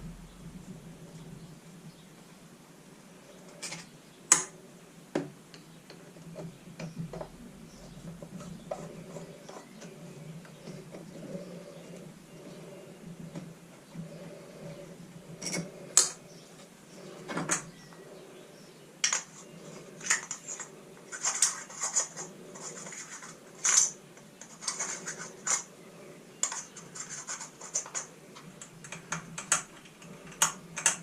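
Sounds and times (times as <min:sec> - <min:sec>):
low steady hum: 0:00.0 - 0:31.0
small tools clicking and clinking: 0:26.4 - 0:31.0.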